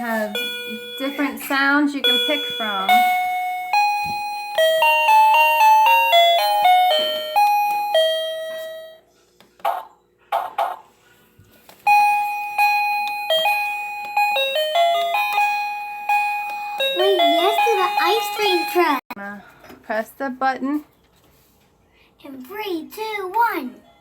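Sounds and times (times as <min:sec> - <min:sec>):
doorbell electronic chime melody: 0:00.0 - 0:09.1, 0:11.9 - 0:19.1.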